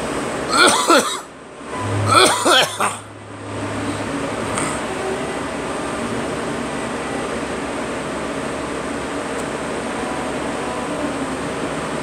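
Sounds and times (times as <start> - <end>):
steady background noise: 0.0 - 12.0
person coughing: 0.5 - 1.3, 2.1 - 3.1.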